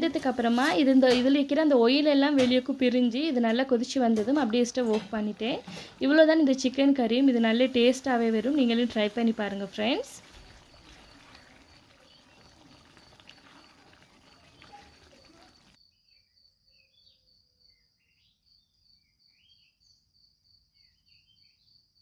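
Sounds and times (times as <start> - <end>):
cricket trilling: 10.2 - 15.8.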